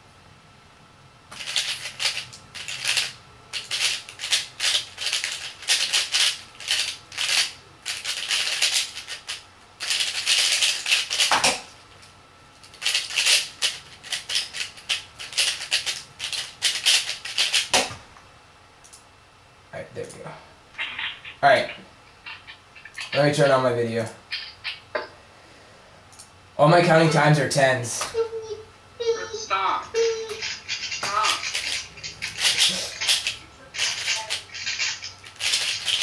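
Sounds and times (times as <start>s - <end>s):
speed cube plastic clacking: 1.4s - 11.6s, 12.8s - 17.8s, 30.4s - 36.0s.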